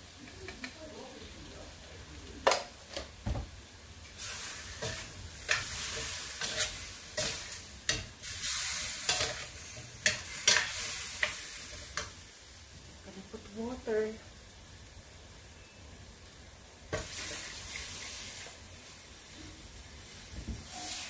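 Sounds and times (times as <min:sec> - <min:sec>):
chicken sizzling in a pan: 0:00.0 - 0:21.0
utensil scraping and knocking pan: 0:04.8 - 0:08.1.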